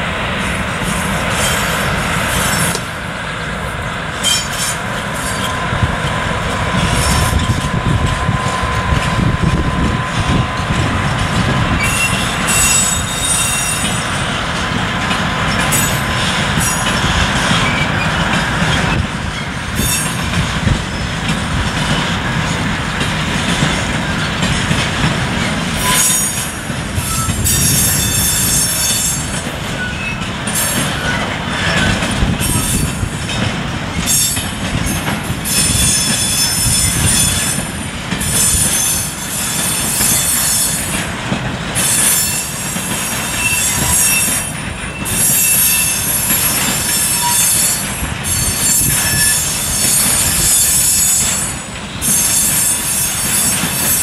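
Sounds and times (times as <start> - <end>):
train wheels rumbling on rails: 0.0 - 54.0
high-pitched wheel squeal: 4.2 - 5.7, 6.7 - 10.8, 11.8 - 14.1, 25.8 - 32.9, 41.8 - 54.0.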